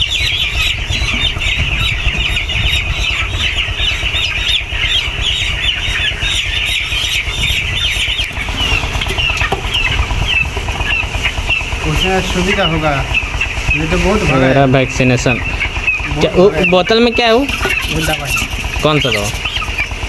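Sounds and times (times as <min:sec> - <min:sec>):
chickens cheeping: 0:00.0 - 0:20.0.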